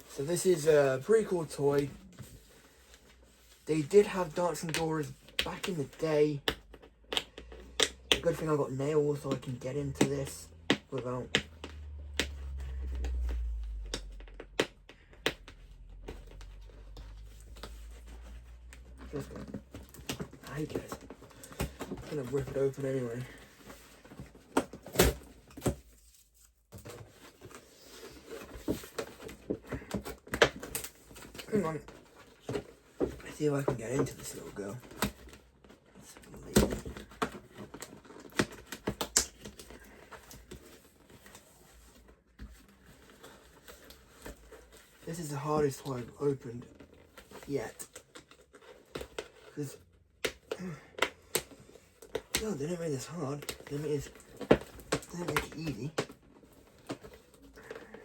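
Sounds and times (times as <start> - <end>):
plastic packaging clicks and crackles: 26.7 - 41.7.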